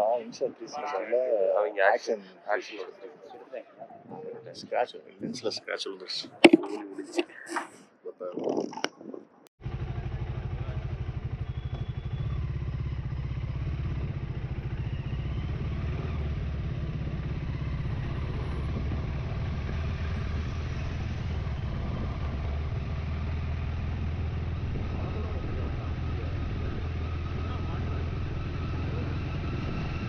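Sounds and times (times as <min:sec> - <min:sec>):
motorcycle engine running: 0:09.6 - 0:30.0.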